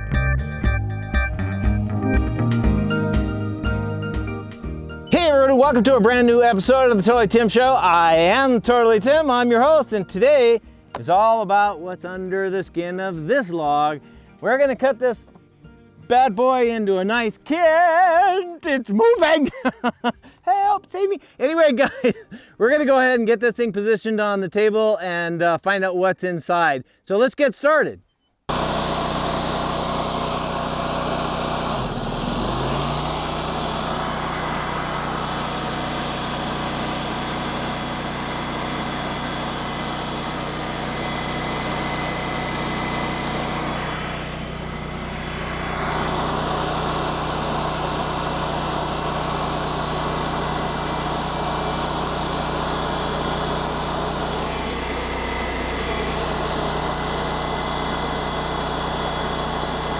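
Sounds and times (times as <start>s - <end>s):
machine engine running: 28.5s - 59.9s.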